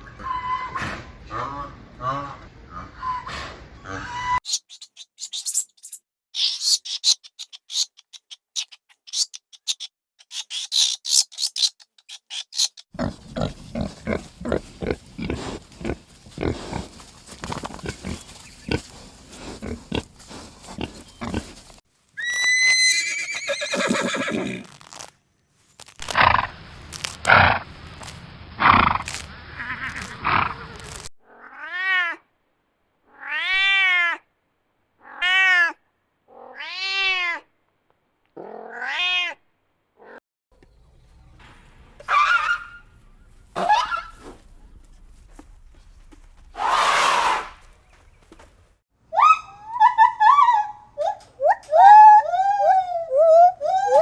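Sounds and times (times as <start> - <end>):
farm animals calling: 13.0 - 25.1, 25.9 - 31.1
cat meowing: 38.5 - 39.4.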